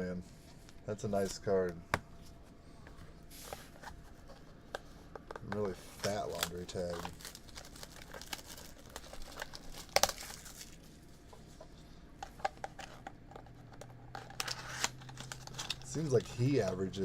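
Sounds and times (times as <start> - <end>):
plastic packaging crinkling: 5.2 - 11.3, 12.2 - 17.0.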